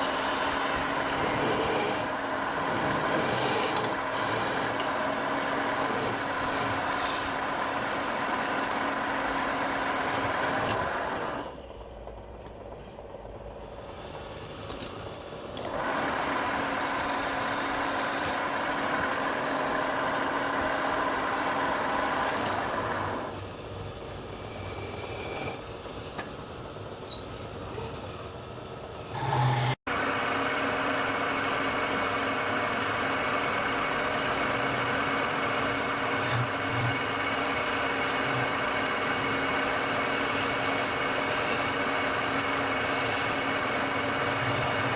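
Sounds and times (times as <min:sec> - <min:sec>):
lathe motor running: 0:00.0 - 0:11.5, 0:15.6 - 0:23.4, 0:29.0 - 0:44.9
turning tool cutting spinning wood: 0:00.0 - 0:11.5, 0:15.6 - 0:23.3, 0:29.1 - 0:44.9.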